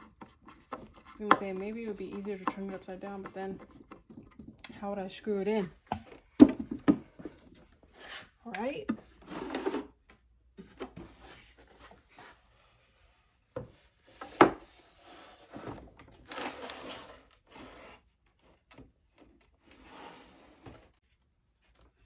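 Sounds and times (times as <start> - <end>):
wood rubbing and scraping: 0.0 - 4.6.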